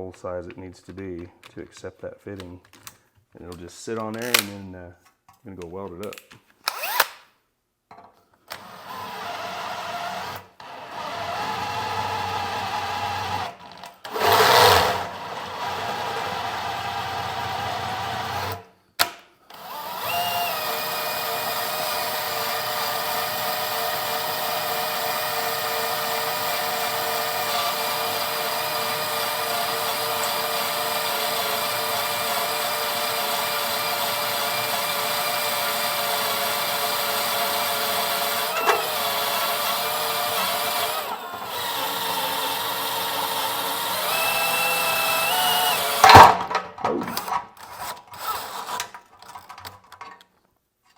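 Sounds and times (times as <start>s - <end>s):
electric drill cutting metal: 6.7s - 7.0s, 8.6s - 18.6s, 19.6s - 48.9s.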